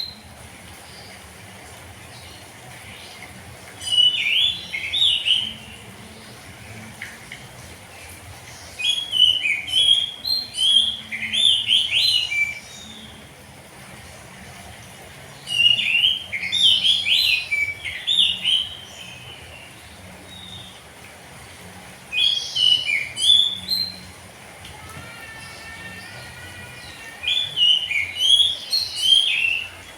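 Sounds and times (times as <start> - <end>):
bird singing whistled song: 3.8 - 5.9, 8.6 - 13.2, 15.4 - 19.4, 22.1 - 24.1, 27.2 - 29.9.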